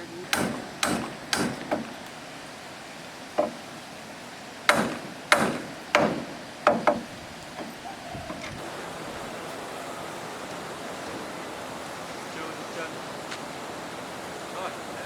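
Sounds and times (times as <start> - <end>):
tool striking wood: 0.3 - 2.0, 4.7 - 7.1.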